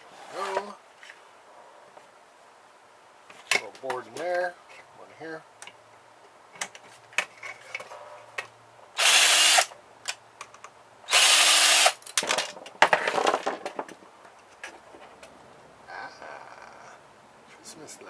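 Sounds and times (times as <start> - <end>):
clicks and rattles of parts: 6.5 - 8.5, 11.9 - 15.4
power drill running: 9.0 - 9.7, 11.1 - 12.0.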